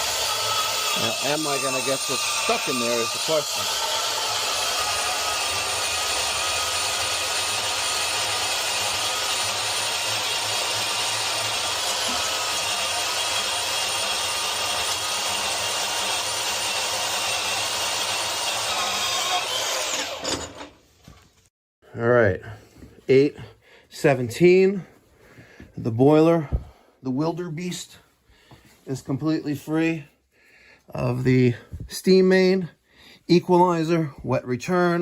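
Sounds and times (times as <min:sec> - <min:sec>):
power saw cutting pipe: 0:00.0 - 0:20.8.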